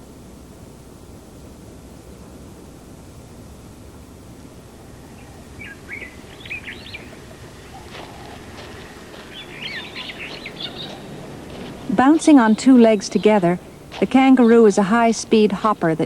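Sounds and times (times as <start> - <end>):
field ambience hiss: 0.0 - 16.0
wild birds chirping: 4.6 - 16.0.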